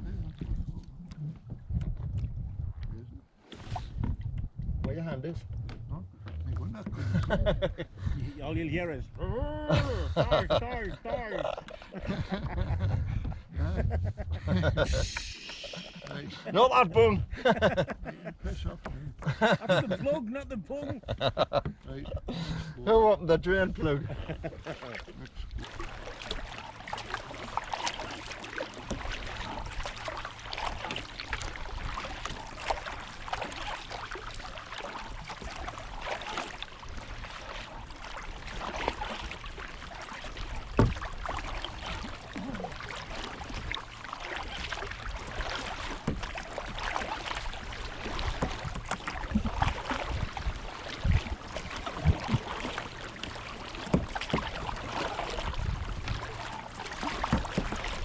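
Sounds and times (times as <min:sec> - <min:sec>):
low thumps on hull: 0:00.0 - 0:15.4, 0:16.8 - 0:19.7, 0:20.7 - 0:58.0
water lapping against kayak hull: 0:00.0 - 0:58.0
small splashes: 0:24.5 - 0:58.0.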